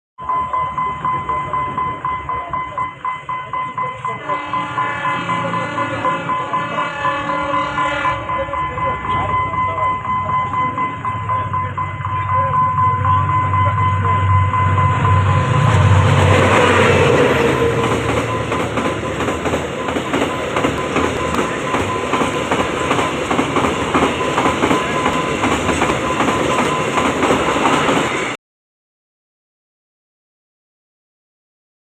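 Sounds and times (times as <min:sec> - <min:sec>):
locomotive rumble: 0:00.2 - 0:28.4
train wheels clattering over rail joints: 0:15.7 - 0:28.3.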